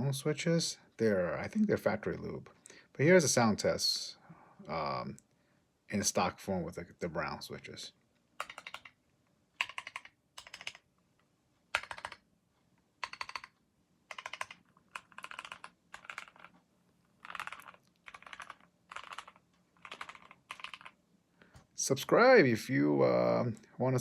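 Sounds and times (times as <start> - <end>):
typing on mechanical keyboard: 8.4 - 9.0, 9.6 - 10.9, 11.7 - 12.3, 13.0 - 16.6, 17.2 - 21.0.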